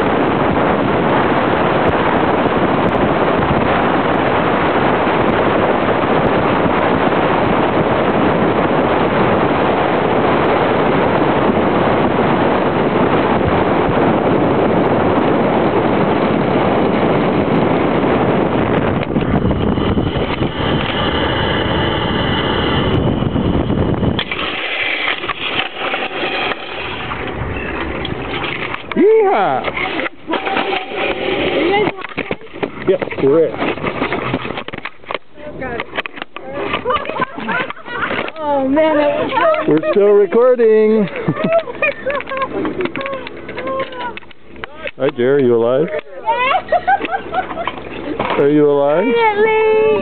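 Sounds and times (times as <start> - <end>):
wind rushing over microphone: 0.0 - 50.0
zip-line trolley running on cable: 19.0 - 34.9.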